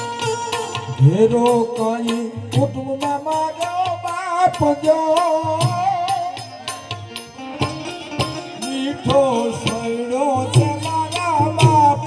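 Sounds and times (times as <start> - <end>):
percussion strokes: 0.0 - 12.0.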